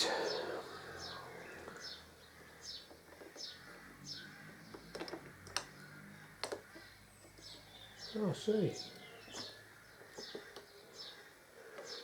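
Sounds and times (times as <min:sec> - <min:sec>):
bird chirping: 0:00.0 - 0:12.0.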